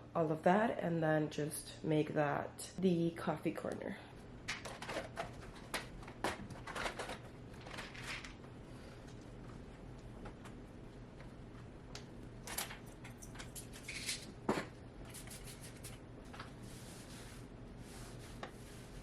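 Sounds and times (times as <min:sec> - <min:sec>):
items clicking and knocking on counter: 0:04.4 - 0:08.4.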